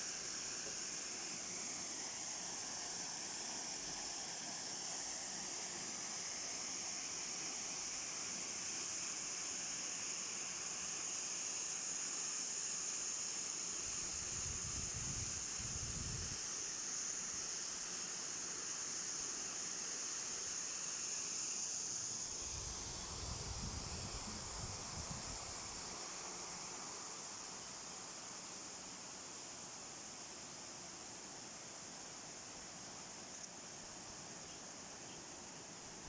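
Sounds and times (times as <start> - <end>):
waterfall hiss: 0.0 - 36.0
wind rumble on microphone: 14.0 - 16.4, 22.6 - 25.7.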